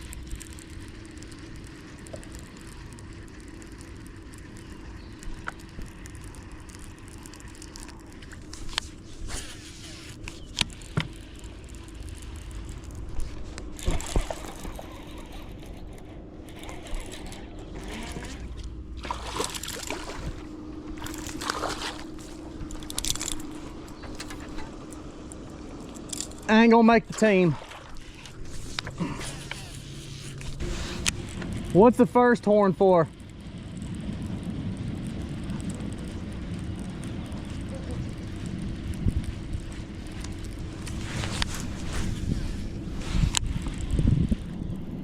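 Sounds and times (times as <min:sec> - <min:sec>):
gear clicking and knocking: 0:00.0 - 0:09.0, 0:10.1 - 0:26.9
boat engine idling: 0:00.0 - 0:44.1
water sloshing: 0:12.4 - 0:32.0.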